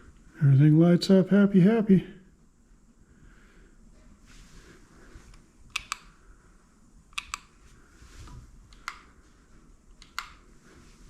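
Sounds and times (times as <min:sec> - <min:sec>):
small switches clicking: 0:05.3 - 0:06.2, 0:07.1 - 0:07.6, 0:08.7 - 0:09.1, 0:09.9 - 0:10.4.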